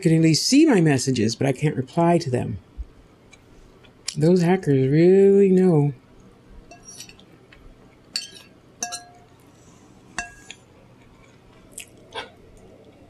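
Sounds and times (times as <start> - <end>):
cutlery clinking against a dish: 6.7 - 7.2, 8.1 - 9.3, 10.2 - 10.6.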